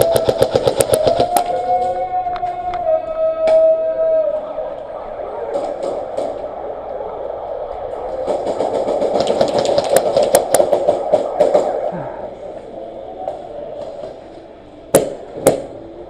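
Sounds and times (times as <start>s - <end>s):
airsoft gun whirring: 0.0s - 1.6s, 7.9s - 11.9s.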